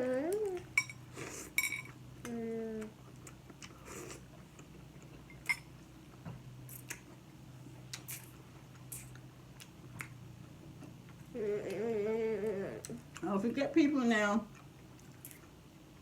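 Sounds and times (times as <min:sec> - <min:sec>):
person humming: 0:00.0 - 0:00.6, 0:02.2 - 0:02.9, 0:11.4 - 0:13.0
spoon and dishes clinking: 0:00.8 - 0:01.0, 0:01.6 - 0:02.0.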